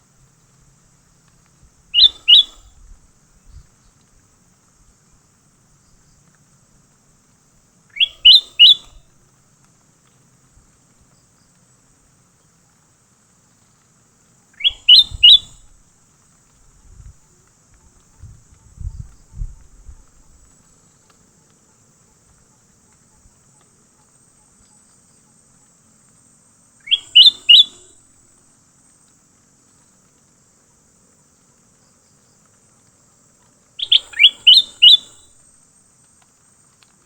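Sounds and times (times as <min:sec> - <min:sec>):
faint insect hum: 0:00.0 - 0:37.0
bird calling sharp upward notes: 0:02.0 - 0:02.6, 0:08.0 - 0:09.0, 0:14.6 - 0:15.6, 0:26.8 - 0:27.9, 0:33.8 - 0:35.4.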